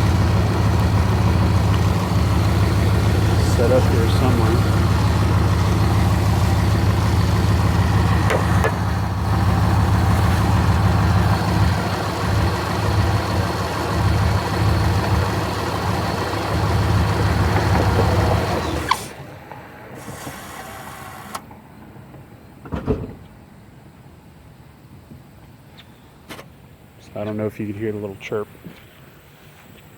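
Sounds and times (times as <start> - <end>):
engine running: 0.0 - 21.5.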